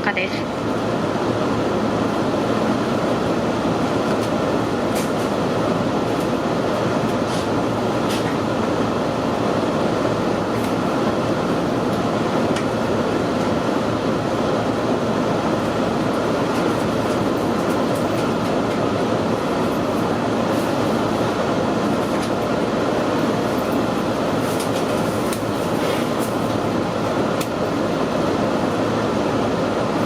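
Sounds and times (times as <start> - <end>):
train car rumbling on rails: 0.0 - 30.0.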